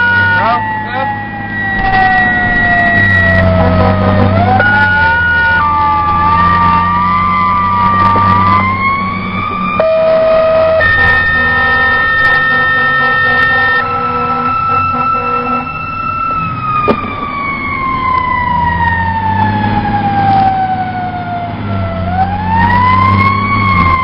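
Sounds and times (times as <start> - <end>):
fire siren wailing: 0.0 - 24.0.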